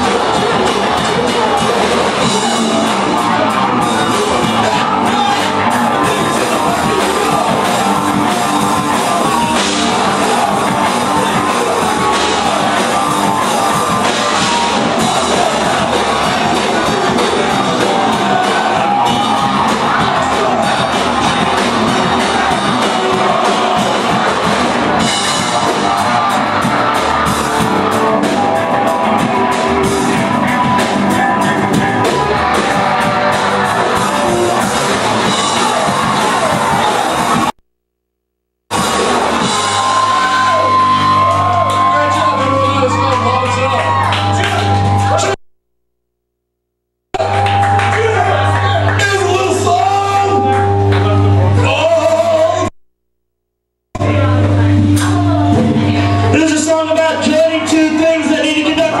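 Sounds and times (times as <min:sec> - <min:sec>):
person singing: 0:00.0 - 0:24.4
drum kit: 0:00.0 - 0:37.6, 0:38.7 - 0:42.3
loud rock music: 0:00.0 - 0:37.6, 0:38.7 - 0:45.4, 0:47.2 - 0:52.8, 0:54.0 - 0:59.0.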